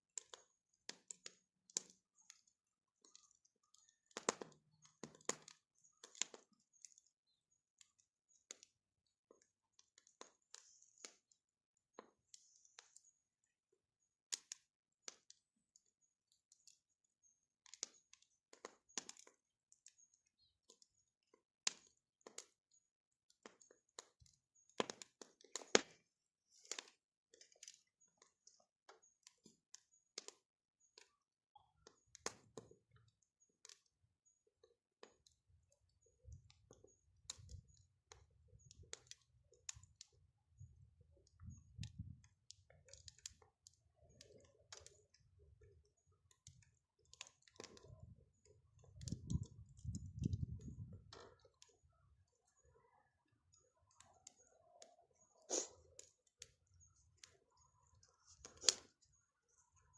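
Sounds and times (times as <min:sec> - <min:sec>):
bonfire crackling: 0:00.1 - 0:02.4, 0:03.0 - 0:07.0, 0:09.3 - 0:11.2, 0:14.3 - 0:15.7, 0:17.6 - 0:20.0, 0:21.6 - 0:22.6, 0:23.4 - 0:28.0, 0:30.2 - 0:33.9, 0:35.0 - 0:52.6, 0:54.0 - 0:59.1.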